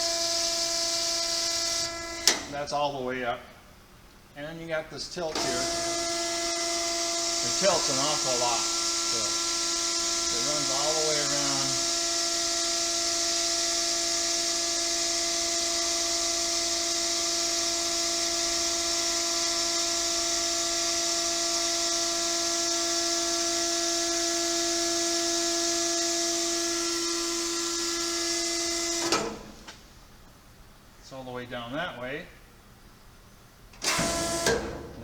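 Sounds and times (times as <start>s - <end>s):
hydraulic pump whine: 0.0s - 4.0s, 5.2s - 30.1s, 33.7s - 35.0s
hiss: 5.3s - 29.8s.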